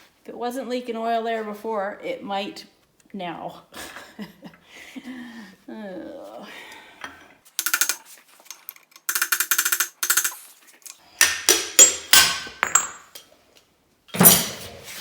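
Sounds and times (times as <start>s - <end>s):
hammer tapping on metal: 9.1s - 10.3s.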